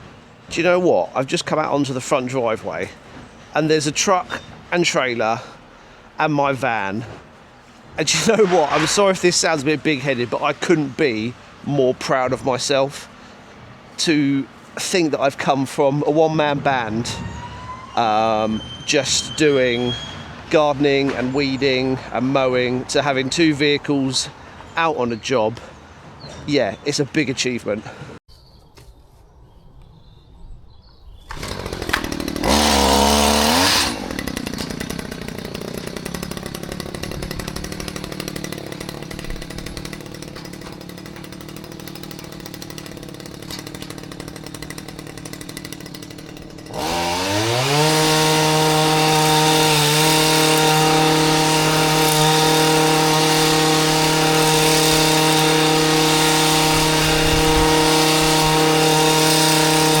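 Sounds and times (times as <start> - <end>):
small petrol engine revving: 31.3 - 60.0.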